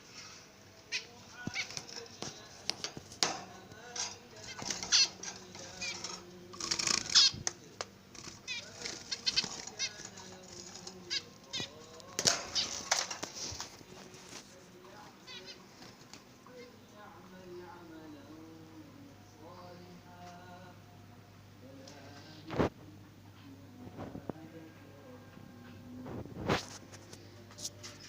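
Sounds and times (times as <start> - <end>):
lovebirds chirping and warbling: 0.8 - 14.2, 14.9 - 17.3
bird screeches: 4.5 - 6.2, 6.8 - 7.4, 8.4 - 10.1.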